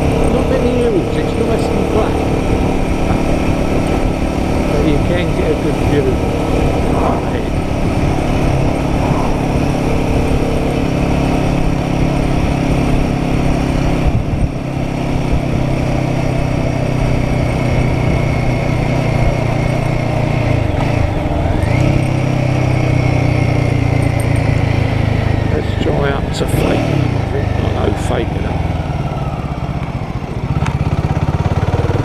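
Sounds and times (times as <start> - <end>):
motorcycle engine cruising: 0.0 - 32.0
wind rush: 1.7 - 15.7.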